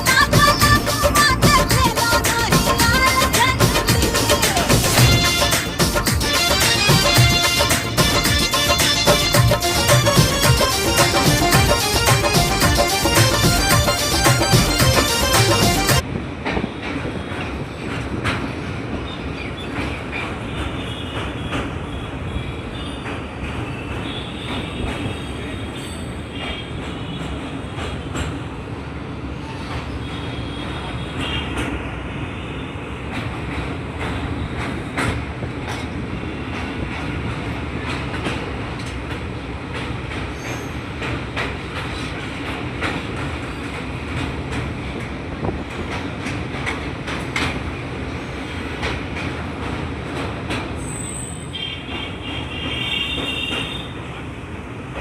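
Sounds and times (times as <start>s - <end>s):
wheels clicking over rail joints: 0.0s - 19.0s, 33.0s - 55.0s
train rumbling on track: 0.0s - 55.0s
high wheel squeal: 40.4s - 40.8s, 50.8s - 54.0s.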